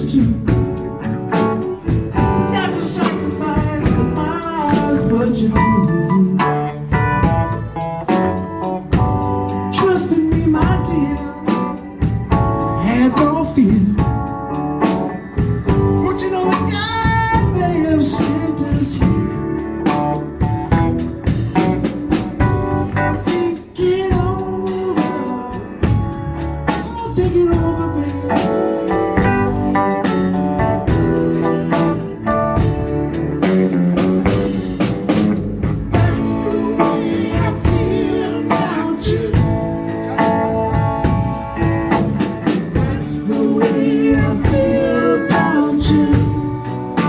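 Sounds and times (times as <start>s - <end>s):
guitar: 0.0s - 47.0s
person singing: 2.2s - 7.0s, 9.7s - 12.1s, 15.7s - 19.6s, 23.2s - 25.6s, 26.7s - 29.5s, 35.9s - 47.0s.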